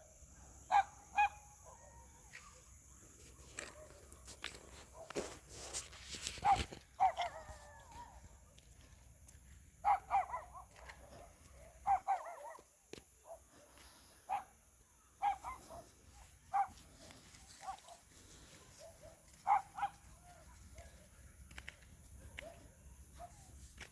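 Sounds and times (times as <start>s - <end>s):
dog barking and yelping: 0.6s - 2.6s, 6.4s - 8.3s, 9.8s - 13.4s, 15.2s - 17.0s, 18.7s - 20.8s.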